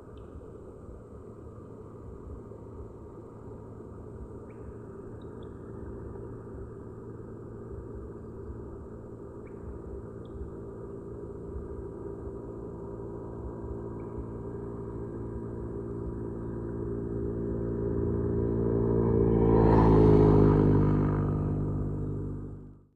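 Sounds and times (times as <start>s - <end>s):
engine passing close by: 0.8s - 22.9s.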